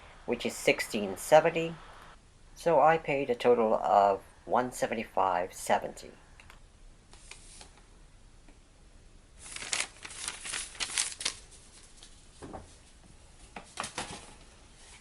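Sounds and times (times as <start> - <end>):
paper crinkling and rustling: 9.4 - 15.0.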